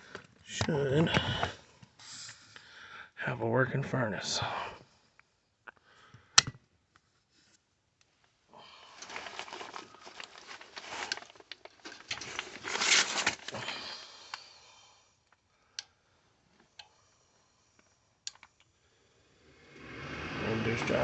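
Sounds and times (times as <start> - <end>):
hands rustling and clattering parts: 6.4 - 13.6.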